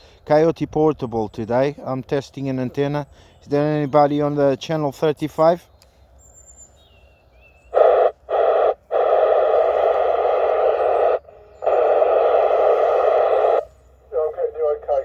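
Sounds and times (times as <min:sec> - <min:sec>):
radio static bursts: 0:07.7 - 0:15.0.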